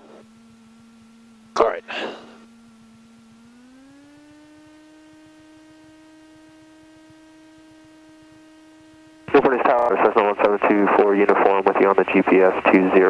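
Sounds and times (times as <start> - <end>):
aircraft engine hum through intercom: 1.6 - 2.2, 9.3 - 13.0.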